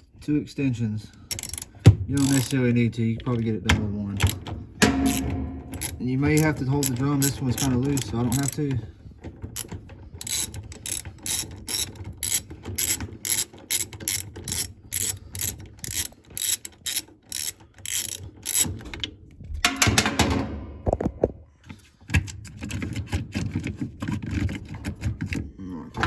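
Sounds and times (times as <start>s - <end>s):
ratchet wrench clicking: 1.3s - 2.6s, 4.9s - 8.6s, 9.6s - 18.8s.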